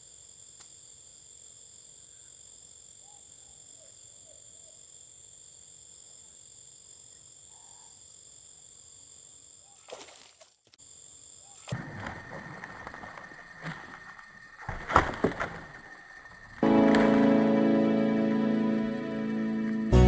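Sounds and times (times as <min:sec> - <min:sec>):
crickets chirring: 0:00.0 - 0:20.0
rough rustling: 0:11.7 - 0:18.4.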